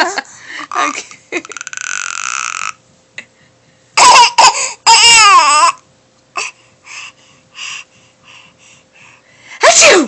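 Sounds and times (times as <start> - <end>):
baby crying: 4.0 - 5.8.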